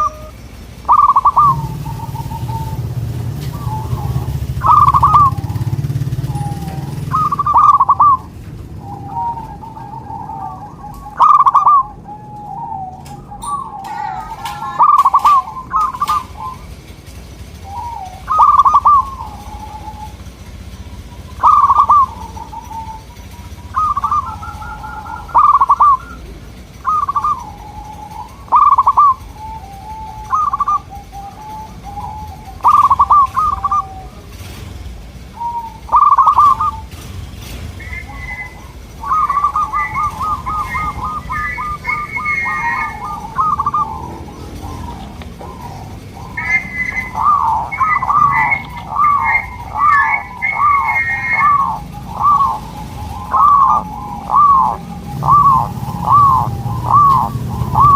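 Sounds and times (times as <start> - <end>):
doves cooing: 0.0 - 57.9.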